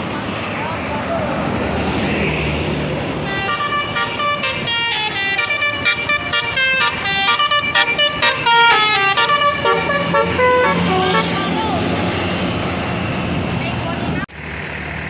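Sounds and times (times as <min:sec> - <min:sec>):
bus engine passing: 0:00.0 - 0:15.0
bus musical horn playing a tune: 0:03.2 - 0:13.0.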